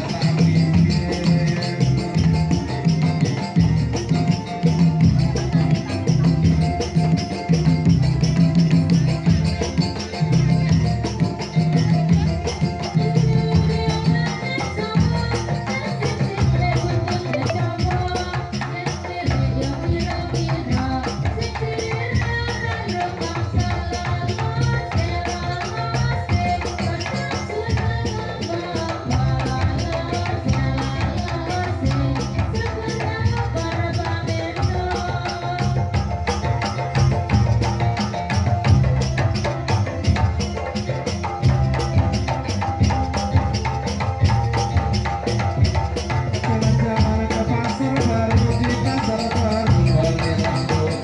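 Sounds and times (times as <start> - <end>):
heavy bass: 0.0 - 14.3, 41.2 - 51.0
fast steady percussion beat: 0.0 - 51.0.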